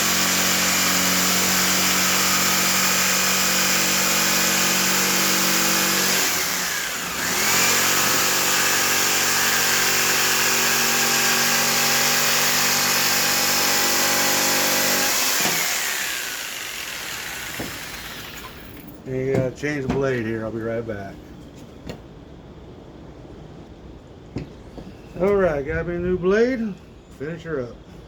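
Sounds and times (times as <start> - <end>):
electric power saw running: 0.0 - 18.9.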